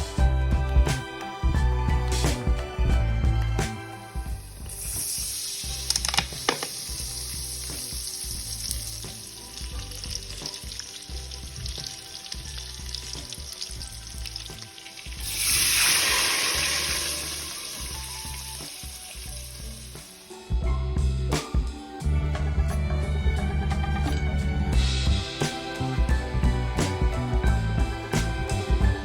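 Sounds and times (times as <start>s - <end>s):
food sizzling in hot oil: 4.1s - 20.5s.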